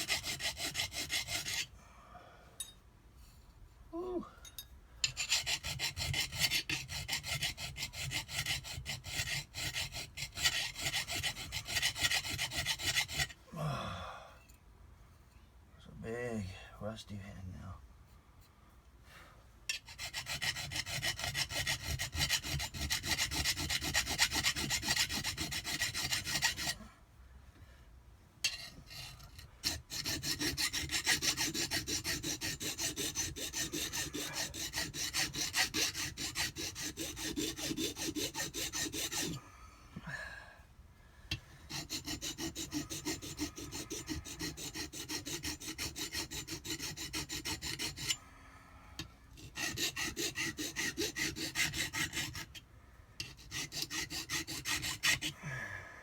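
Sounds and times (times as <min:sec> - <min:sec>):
hand file rasping on metal: 0:00.0 - 0:01.7, 0:05.0 - 0:13.4, 0:19.7 - 0:26.9, 0:28.4 - 0:39.4, 0:41.3 - 0:48.2, 0:49.0 - 0:55.4.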